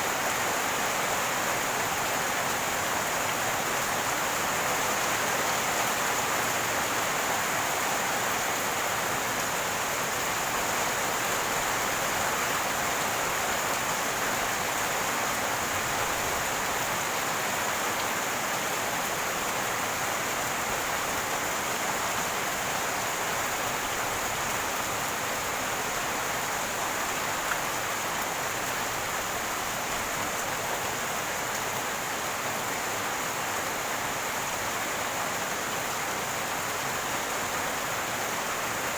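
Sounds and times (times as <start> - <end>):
rainwater running and gurgling: 0.0 - 38.9.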